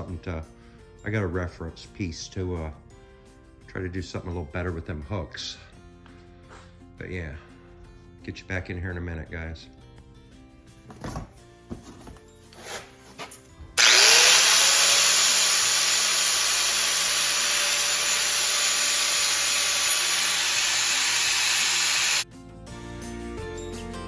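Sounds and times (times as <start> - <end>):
power tool motor whining: 13.8 - 22.2.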